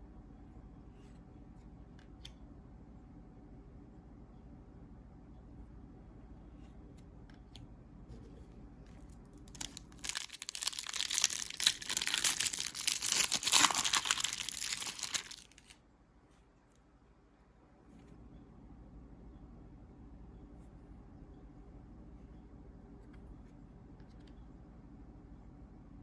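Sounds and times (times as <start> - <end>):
wrapper crackling: 9.3 - 15.8.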